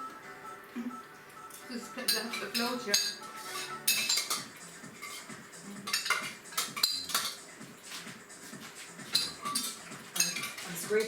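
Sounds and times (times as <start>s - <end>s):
metal spoon scraping a pot: 2.0s - 8.1s, 8.9s - 11.0s.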